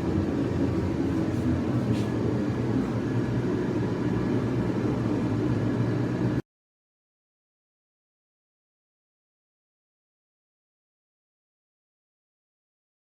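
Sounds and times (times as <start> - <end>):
low mechanical hum: 0.0 - 6.4.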